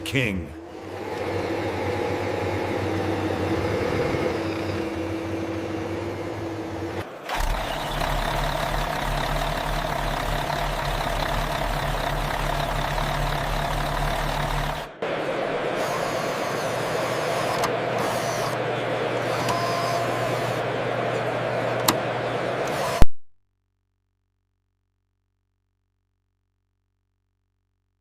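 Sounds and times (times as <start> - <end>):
model vehicle engine idling: 0.6 - 15.0.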